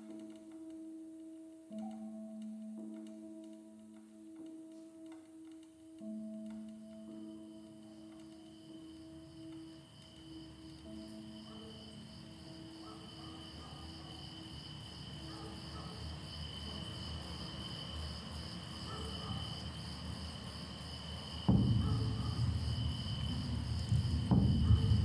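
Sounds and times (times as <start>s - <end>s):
crickets chirring: 6.0s - 25.0s
faint ringing tones: 6.1s - 25.0s
loud low rumble: 21.5s - 25.0s
low rumble: 21.5s - 25.0s.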